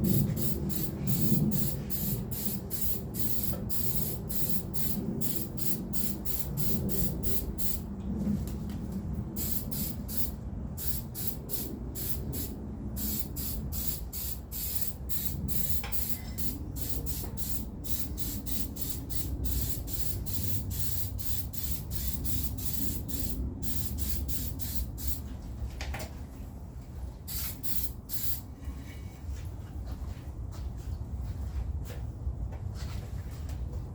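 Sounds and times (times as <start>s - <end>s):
aerosol spray can hissing: 0.0s - 7.8s, 9.4s - 25.2s, 27.3s - 28.4s.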